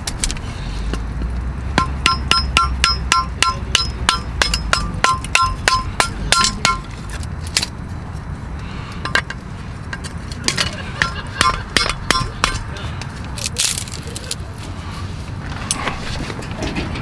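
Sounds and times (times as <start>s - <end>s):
sharp ringing metal taps: 1.8s - 7.0s, 9.0s - 12.7s.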